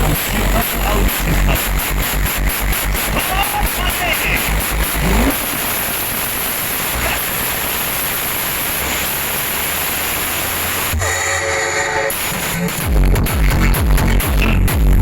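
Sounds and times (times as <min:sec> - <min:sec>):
loud rushing noise: 0:00.0 - 0:15.0
short buzzing tone: 0:10.9 - 0:12.4.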